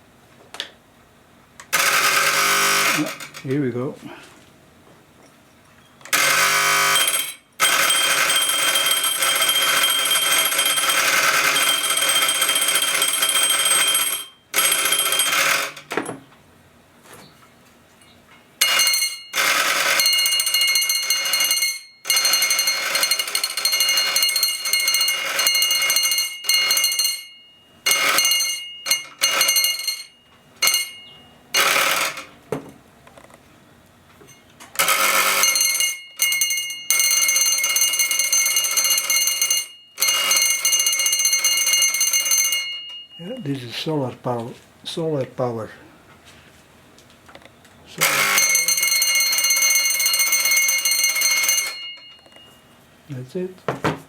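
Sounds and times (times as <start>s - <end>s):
electric doorbell ringing: 1.7s - 3.5s, 6.1s - 16.2s, 18.6s - 32.4s, 34.2s - 43.7s, 48.0s - 52.8s.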